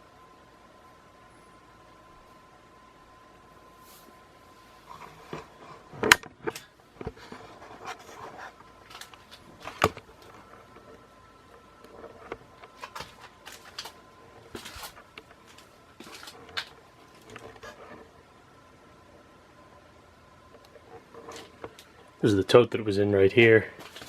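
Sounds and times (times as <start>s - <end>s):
faint steady hum: 0.0s - 24.0s
objects being moved: 4.8s - 11.0s, 11.9s - 18.1s, 20.6s - 22.0s, 23.8s - 24.0s.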